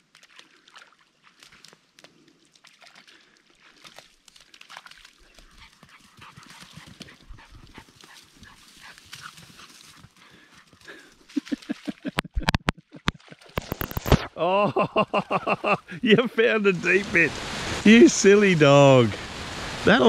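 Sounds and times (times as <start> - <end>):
paws splashing in shallow water: 0.0 - 13.8.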